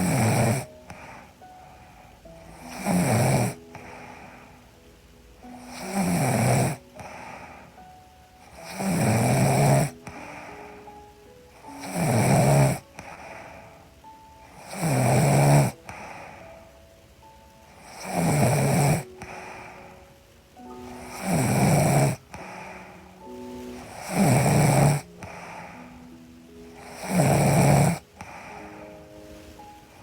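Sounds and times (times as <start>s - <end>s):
woman snoring: 0.0s - 4.6s, 5.5s - 7.8s, 8.4s - 10.9s, 11.6s - 13.7s, 14.5s - 16.4s, 17.8s - 20.0s, 20.8s - 23.0s, 23.6s - 28.8s.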